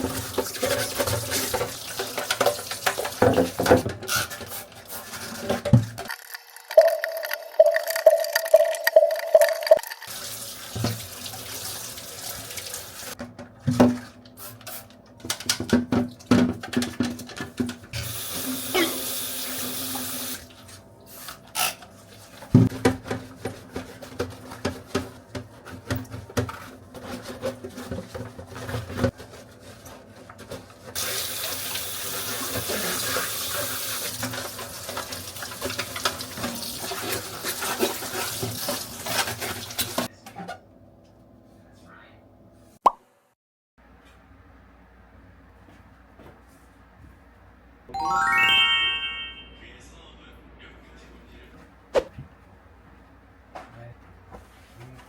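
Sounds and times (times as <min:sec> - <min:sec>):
tap water running into sink: 0:07.6 - 0:13.2, 0:31.0 - 0:40.1.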